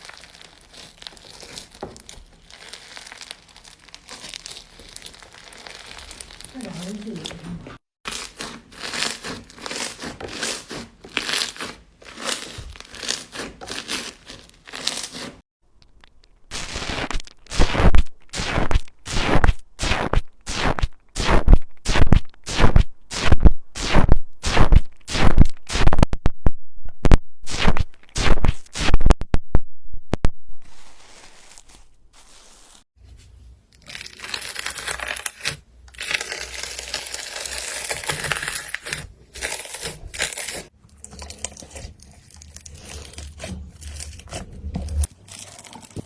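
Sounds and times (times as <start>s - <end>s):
slime squeezed by hand crackling: 0.0s - 7.2s.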